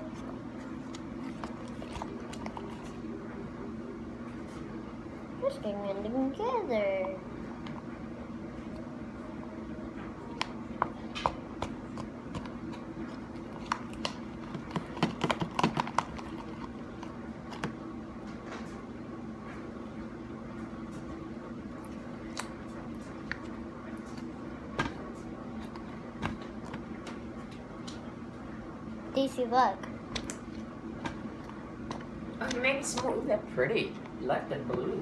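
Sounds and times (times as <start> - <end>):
slime squelching by hand: 0.0 - 3.1
steady low hum: 0.0 - 35.0.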